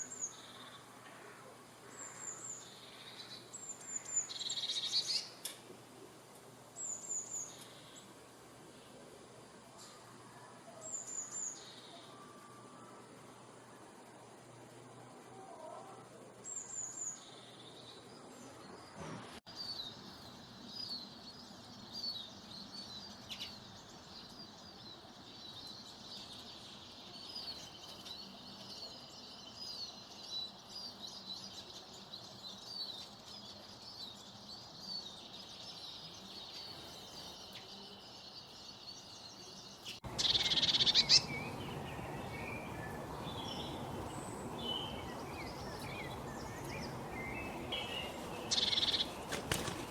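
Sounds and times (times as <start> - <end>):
birds chirping: 0.0 - 49.9
steady hiss: 0.0 - 49.9
faint steady high tone: 9.7 - 14.5
loud close bird call: 40.0 - 49.9.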